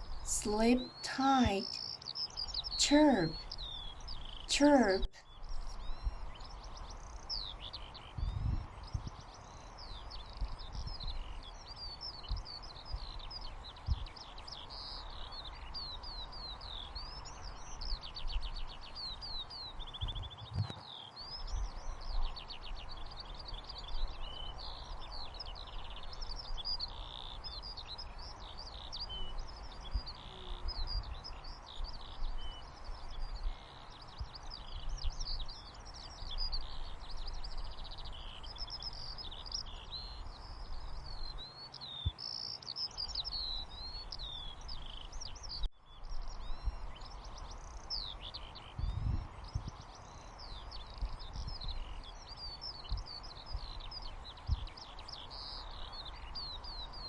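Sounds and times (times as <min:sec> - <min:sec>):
small birds chirping: 0:21.1 - 0:57.0.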